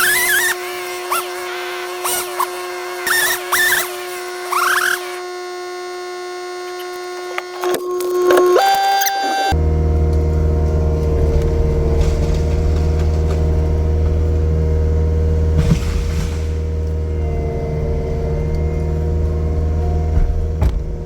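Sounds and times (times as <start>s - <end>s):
diesel engine running: 9.5s - 21.0s.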